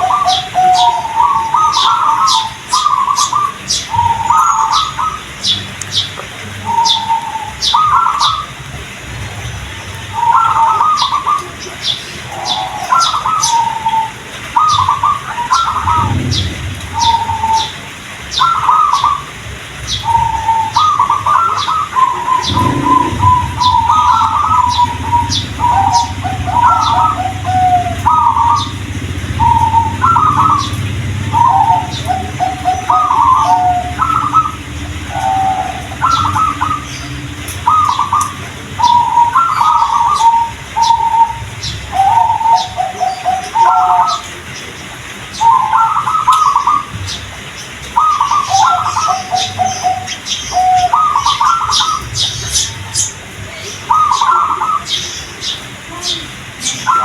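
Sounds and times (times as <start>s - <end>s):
dove cooing: 0.0s - 5.4s, 6.6s - 44.4s, 45.3s - 57.0s
low hum: 15.7s - 17.8s, 22.2s - 41.9s.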